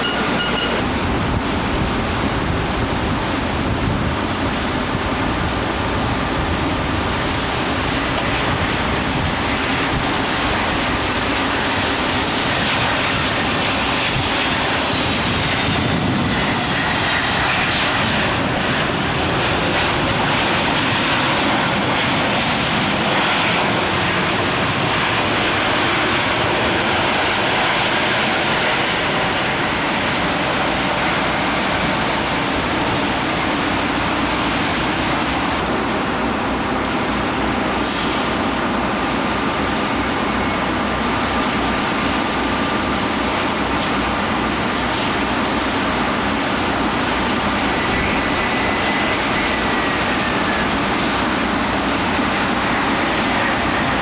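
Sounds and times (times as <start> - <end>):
engine whine falling in pitch: 0.0 - 1.1
jet aircraft engines: 0.0 - 54.0.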